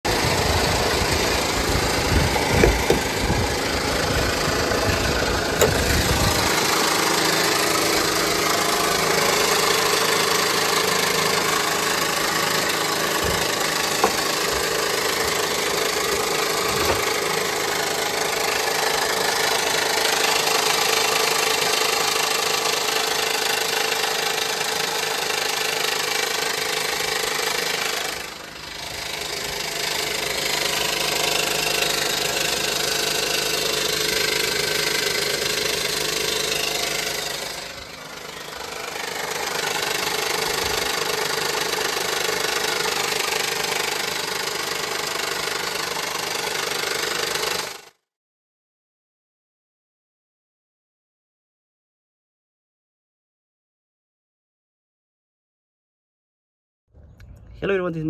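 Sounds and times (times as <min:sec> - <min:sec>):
deep engine rumble: 0:00.1 - 0:19.9, 0:57.0 - 0:58.0
car engine idling: 0:00.1 - 0:47.9.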